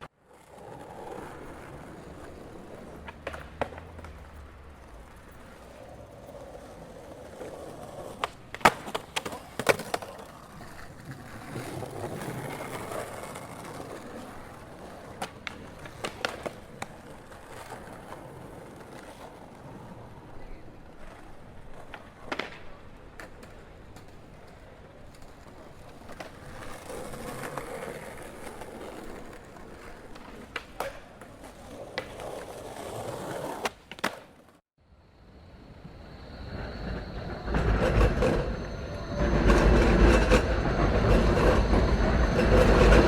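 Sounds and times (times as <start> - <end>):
distant traffic: 0.9 - 9.6, 34.9 - 43.0.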